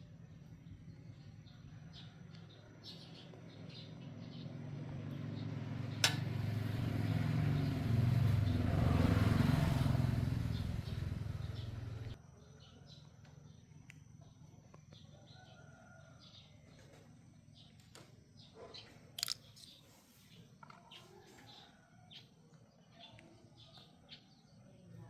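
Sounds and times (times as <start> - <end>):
vehicle engine running: 3.3 - 12.2
sharp click: 6.0 - 6.3.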